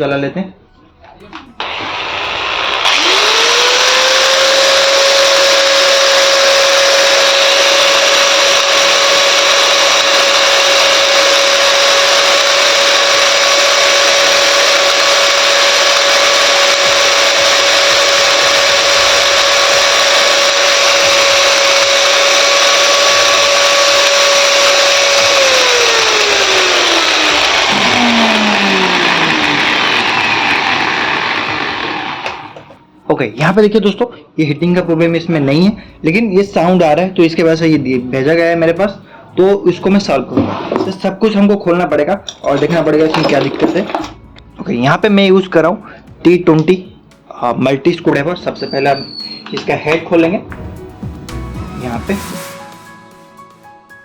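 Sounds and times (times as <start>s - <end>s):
angle grinder spinning: 1.6s - 32.8s, 42.3s - 44.2s, 48.1s - 50.4s.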